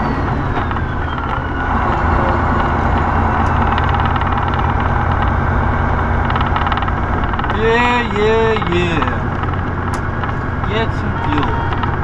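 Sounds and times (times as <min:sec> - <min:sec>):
diesel truck engine rumble: 0:00.0 - 0:12.0.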